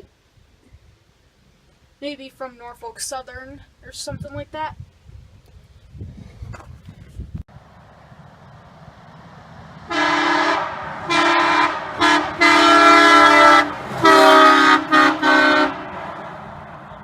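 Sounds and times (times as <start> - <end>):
truck driving past: 7.5 - 17.0
locomotive air horn blasts: 9.9 - 16.3.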